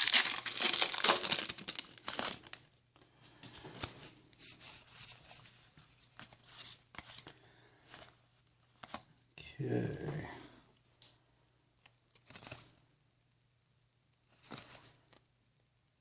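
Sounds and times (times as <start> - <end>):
foil wrapper tearing and crinkling: 0.0 - 2.6.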